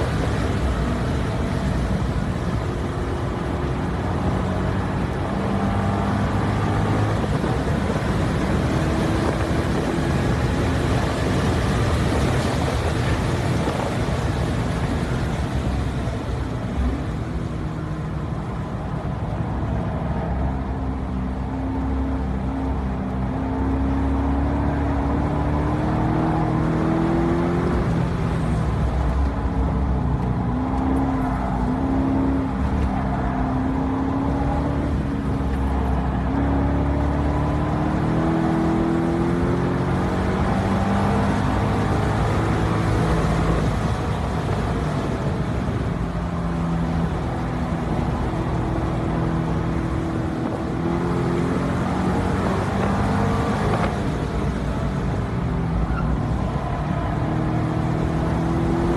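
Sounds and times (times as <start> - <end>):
car engine revving: 21.3 - 58.9.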